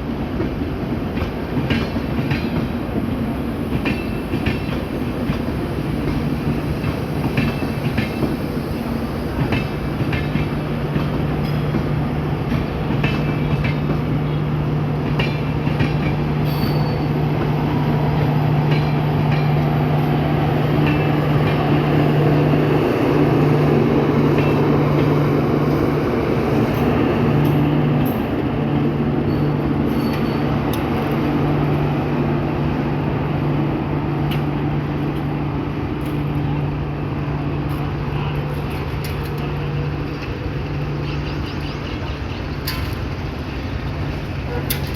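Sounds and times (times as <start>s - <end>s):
electric train humming and rumbling: 0.0s - 44.9s
wheels clicking over rail joints: 37.7s - 44.9s.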